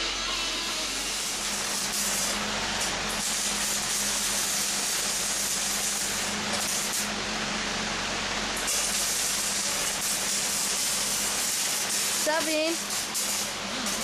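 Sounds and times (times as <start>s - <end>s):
air-powered tool hissing: 0.0s - 7.1s, 8.6s - 14.0s
low motor hum: 0.0s - 10.1s.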